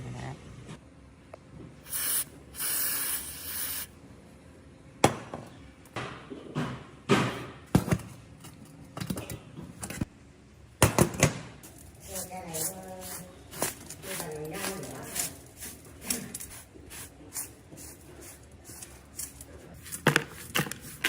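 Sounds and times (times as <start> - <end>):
short hissing bursts: 1.8 - 3.9
clicks and knocks of objects: 5.9 - 10.1.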